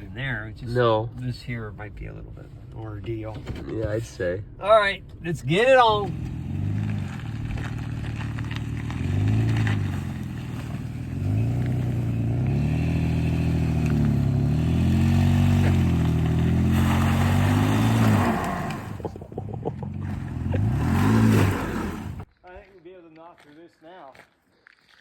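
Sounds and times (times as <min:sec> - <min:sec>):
truck engine revving: 0:05.8 - 0:22.3
crunching clatter: 0:06.1 - 0:23.4.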